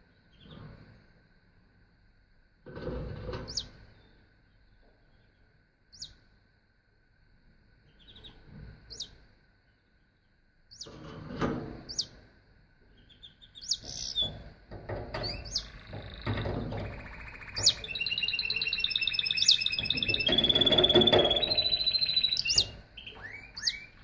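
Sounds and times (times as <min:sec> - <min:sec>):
canary singing: 0:13.0 - 0:14.4, 0:15.1 - 0:24.0.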